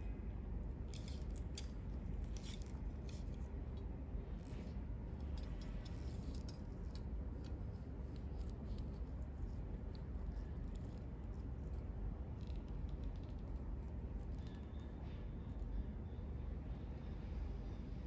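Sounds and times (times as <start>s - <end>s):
steady low hum: 0.0s - 18.0s
small objects clicking and scraping: 0.9s - 3.5s, 4.4s - 11.8s.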